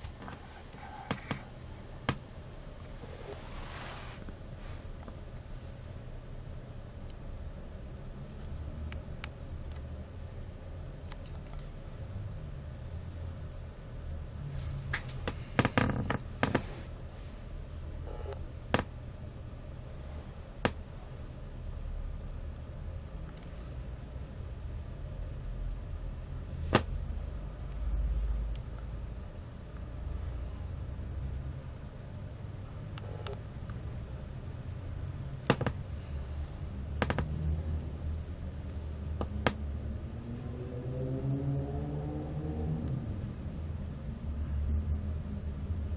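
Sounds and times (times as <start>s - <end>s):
low steady hum: 0.0s - 45.9s
low drone rising in pitch: 39.3s - 43.7s.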